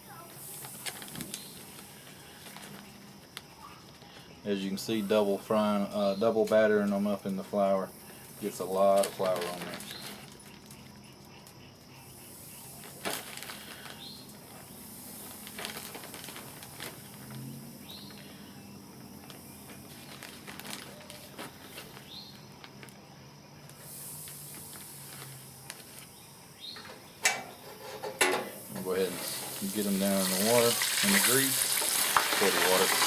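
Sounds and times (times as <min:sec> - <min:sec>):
high hiss: 0:23.8 - 0:26.0, 0:26.6 - 0:33.0
bird chirping: 0:26.0 - 0:32.9
handling clicks and knocks: 0:26.8 - 0:29.0.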